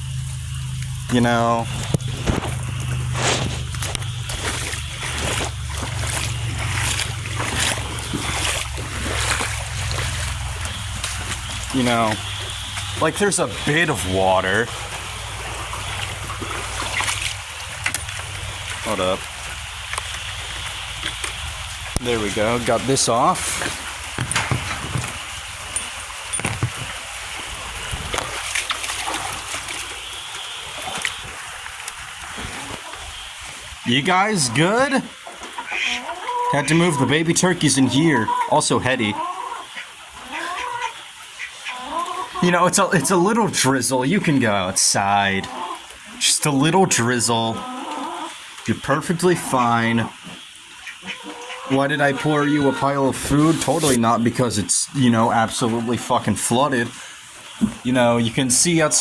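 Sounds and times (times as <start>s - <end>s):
wind rumbling on microphone: 0.0s - 13.0s, 23.5s - 28.6s
water splashes: 0.0s - 59.0s
water washing: 0.0s - 59.0s
short knocks and clicks: 24.1s - 25.2s.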